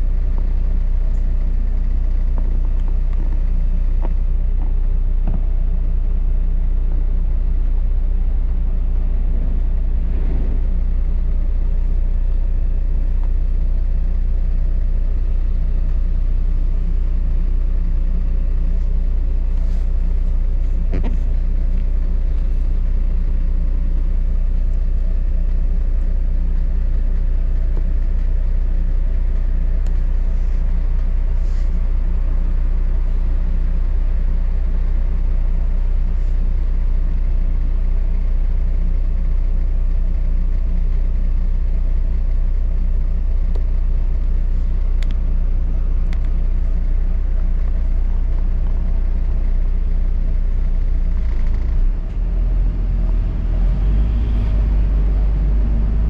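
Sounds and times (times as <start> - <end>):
bus rumbling: 0.8 - 13.1, 18.5 - 28.2, 29.2 - 33.2, 45.8 - 56.0.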